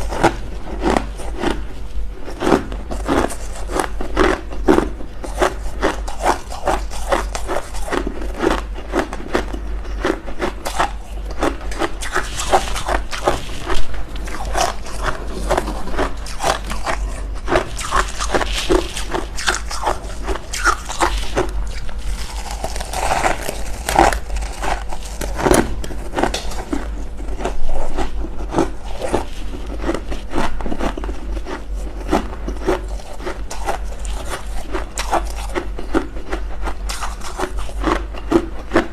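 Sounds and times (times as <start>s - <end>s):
frost crunching while chewed: 0.0s - 38.9s
steady low hum: 0.0s - 38.9s.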